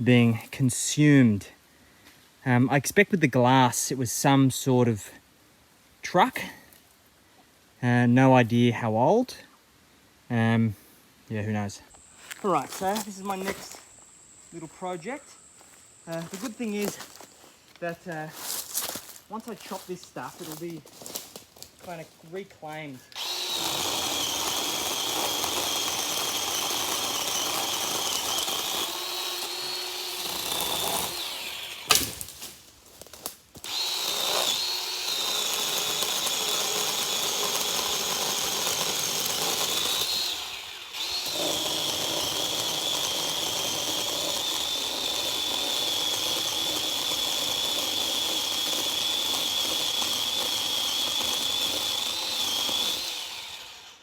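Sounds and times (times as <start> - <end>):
power tool motor whining: 23.1 - 32.3, 33.6 - 54.0.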